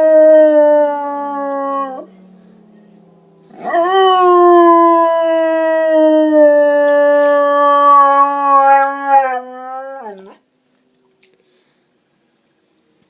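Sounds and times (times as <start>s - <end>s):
dog howling: 0.0s - 2.2s, 3.5s - 10.4s.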